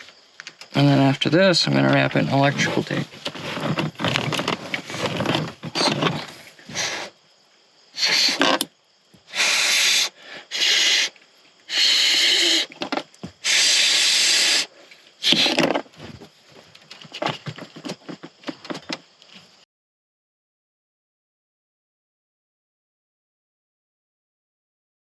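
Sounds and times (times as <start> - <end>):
rustling and handling clicks: 2.6 - 6.4
electrical tape tearing off roll: 2.6 - 7.1, 8.0 - 8.7, 15.2 - 16.0.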